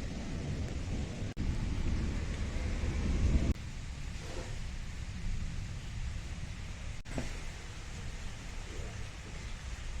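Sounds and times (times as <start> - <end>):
rolling thunder: 0.0 - 3.6
steady hiss: 0.0 - 10.0.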